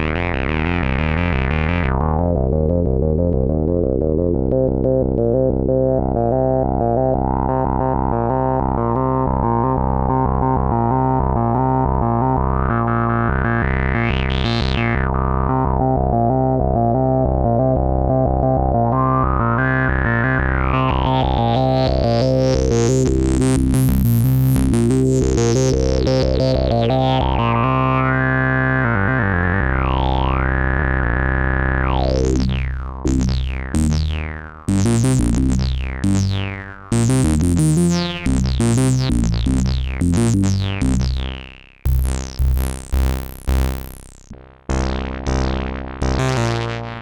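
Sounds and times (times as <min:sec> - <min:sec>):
synthesizer repeating note pattern: 0:20.8 - 0:27.6, 0:31.7 - 0:47.0.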